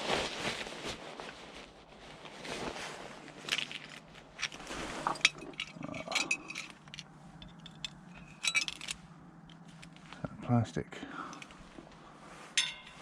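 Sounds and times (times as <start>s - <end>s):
scrap objects clinking and scraping: 3.3s - 10.2s, 11.3s - 13.0s.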